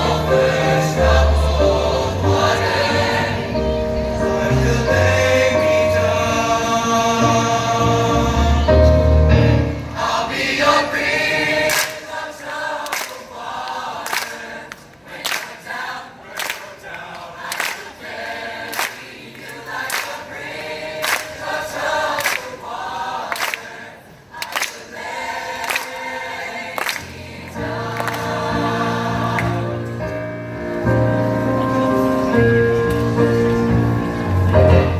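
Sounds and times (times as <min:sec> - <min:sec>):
choir singing: 0:00.0 - 0:34.9
deep instrumental backing: 0:27.6 - 0:34.9.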